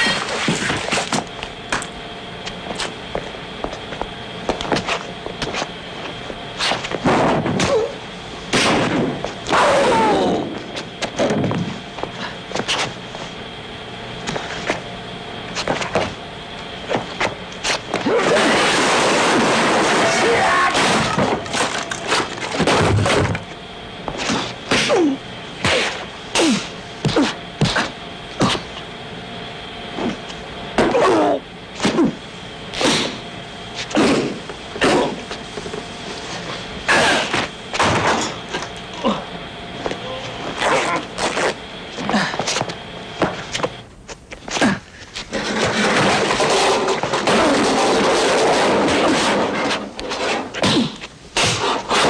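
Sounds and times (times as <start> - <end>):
dense steady noise: 0.0 - 52.0
crashing and breaking: 18.2 - 23.2.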